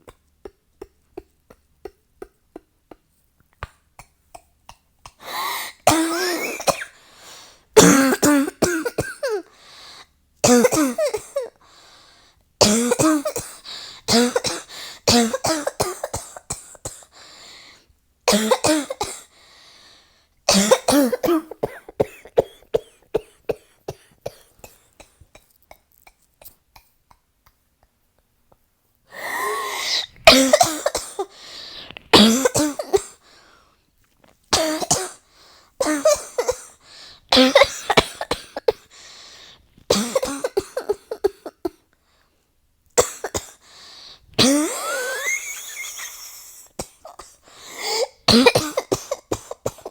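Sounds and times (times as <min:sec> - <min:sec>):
person coughing: 0:05.2 - 0:07.0, 0:07.8 - 0:09.5, 0:10.4 - 0:11.6, 0:12.6 - 0:17.1, 0:18.3 - 0:19.3, 0:20.5 - 0:25.2, 0:29.2 - 0:31.4, 0:32.1 - 0:33.2, 0:34.6 - 0:35.2, 0:35.8 - 0:38.9, 0:39.9 - 0:41.8, 0:44.4 - 0:49.9.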